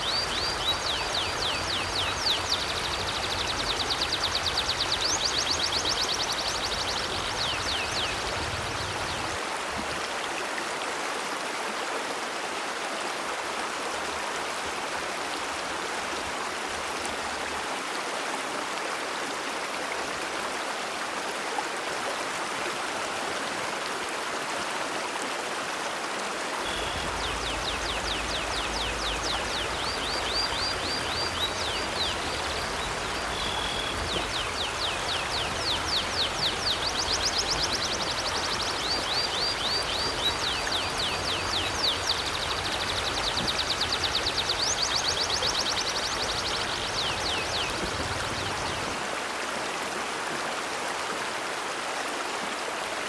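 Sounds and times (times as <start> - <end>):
bird chirping: 0.0 - 8.3, 26.6 - 48.9
river flowing: 0.0 - 53.0.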